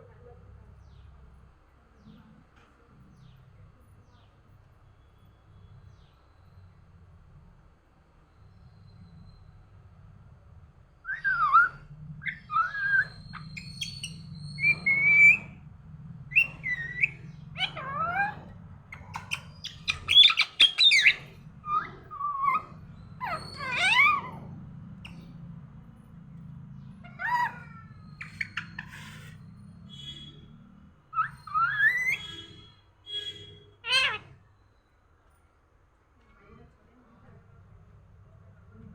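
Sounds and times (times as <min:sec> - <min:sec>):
faint low hum: 0:00.0 - 0:38.9
parrot calls and whistles: 0:11.0 - 0:15.6, 0:16.3 - 0:24.4, 0:27.0 - 0:34.9.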